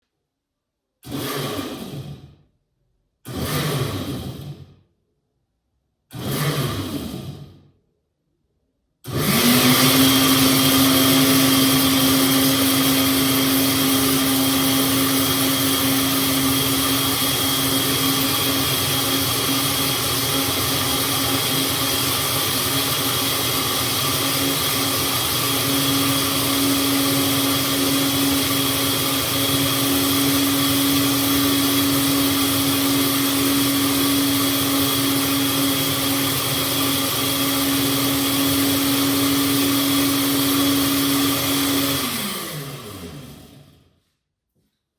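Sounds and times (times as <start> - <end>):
blender motor running: 1.0 - 2.4, 3.3 - 4.8, 6.1 - 7.6, 9.0 - 43.9.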